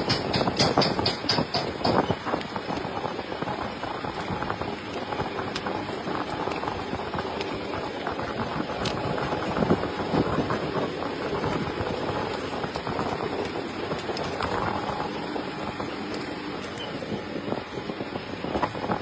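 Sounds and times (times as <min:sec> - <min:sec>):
sharp clicks and knocks: 0:00.0 - 0:03.0
workshop machinery clattering hum: 0:00.0 - 0:19.0.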